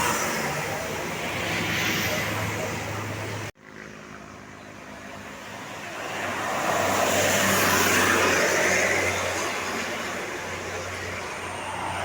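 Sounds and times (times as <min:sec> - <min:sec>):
road vehicle passing by: 0:04.9 - 0:12.0.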